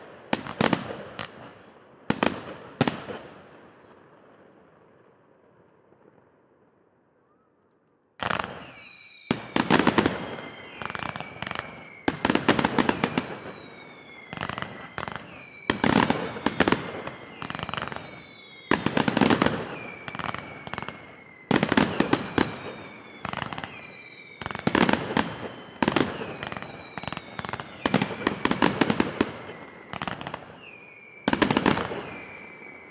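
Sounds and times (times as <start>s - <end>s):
firework bangs and crackling: 0.0s - 6.4s, 8.2s - 32.9s
high whistle sliding down: 8.6s - 9.7s.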